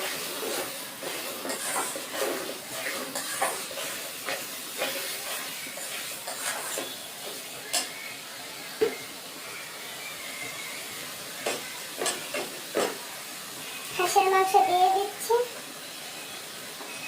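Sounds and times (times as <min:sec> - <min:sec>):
spatula scraping pan: 0:00.0 - 0:08.2, 0:10.2 - 0:14.2
food frying with hiss: 0:00.0 - 0:17.0.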